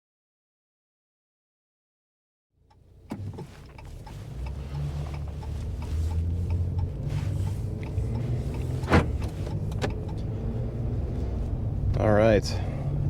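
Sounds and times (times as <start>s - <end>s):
car engine and road rumble: 2.6s - 13.0s.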